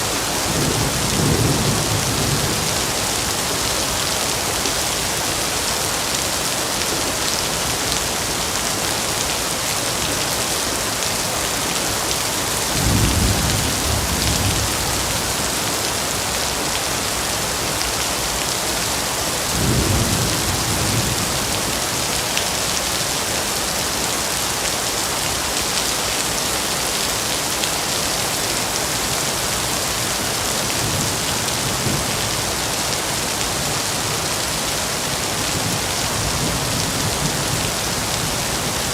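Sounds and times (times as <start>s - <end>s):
steady rain: 0.0s - 38.9s
low thunder rumbles: 12.8s - 15.6s.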